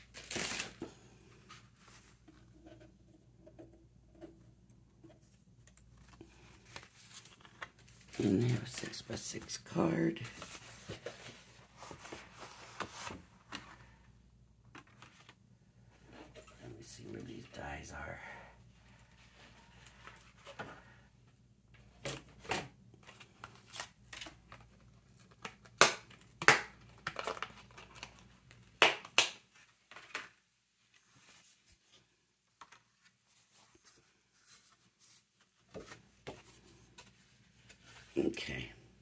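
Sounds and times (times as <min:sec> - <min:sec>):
packaging crinkling and rustling: 0:00.0 - 0:01.0, 0:05.7 - 0:13.9, 0:23.0 - 0:29.1.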